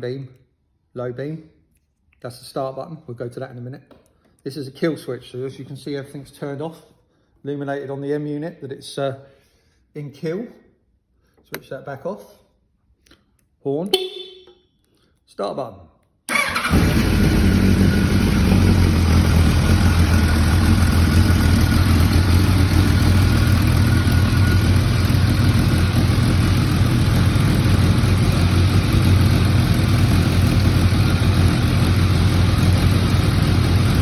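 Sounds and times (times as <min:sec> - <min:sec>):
motorcycle engine idling: 0:16.3 - 0:34.0.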